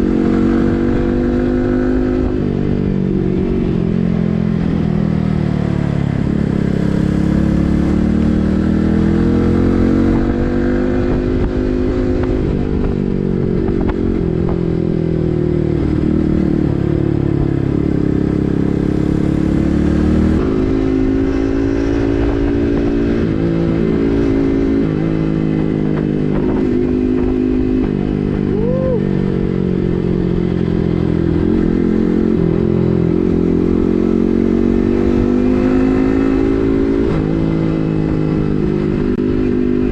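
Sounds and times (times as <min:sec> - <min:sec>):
motorcycle engine while riding: 0:00.0 - 0:39.9.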